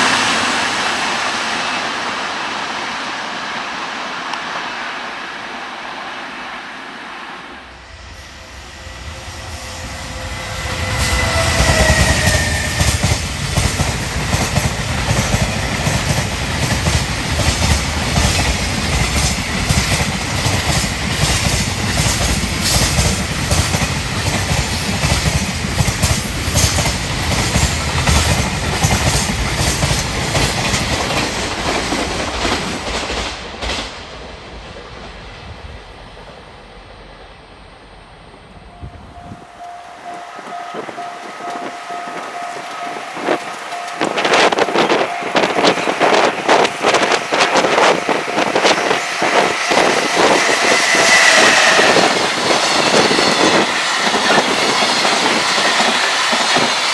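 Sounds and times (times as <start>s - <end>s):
locomotive passing: 0.0s - 36.1s, 38.2s - 56.9s
wagons clattering over rail joints: 11.4s - 33.8s, 39.0s - 56.9s.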